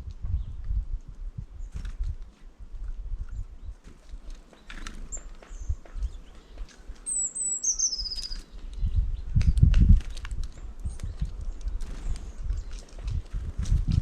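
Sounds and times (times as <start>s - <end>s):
small bird chirping and trilling: 3.3s - 13.6s.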